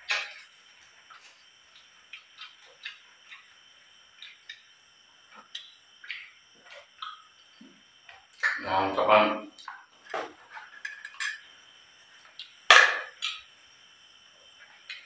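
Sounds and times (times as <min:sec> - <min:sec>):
chewing and lip smacks: 0:01.2 - 0:03.5, 0:05.3 - 0:07.6.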